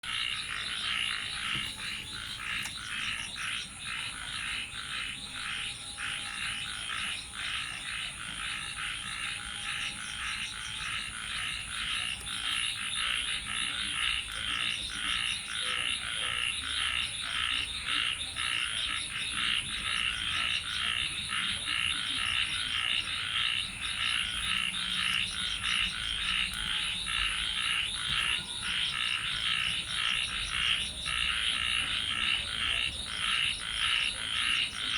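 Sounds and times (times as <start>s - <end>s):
chorus of frogs calling: 0.0s - 34.9s.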